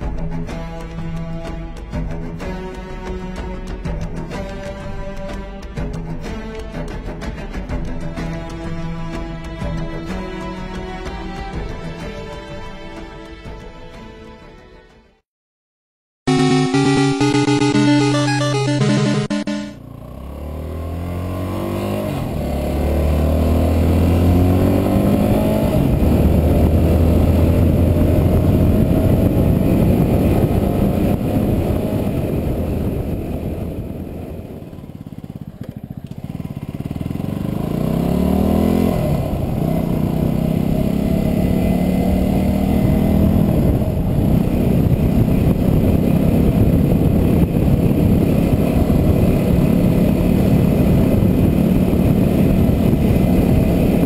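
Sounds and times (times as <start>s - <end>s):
motorcycle engine accelerating: 18.8s - 54.0s.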